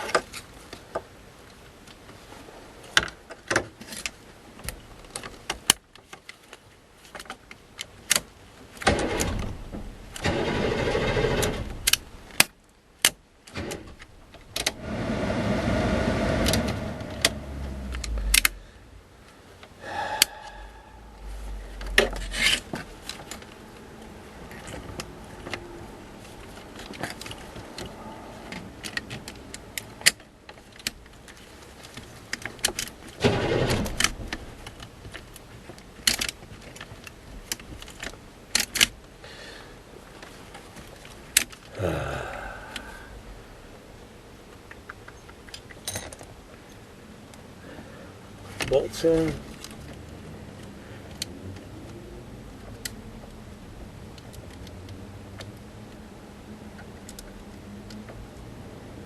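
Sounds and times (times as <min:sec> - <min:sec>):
sustained mechanical runs: 0:10.2 - 0:12.0.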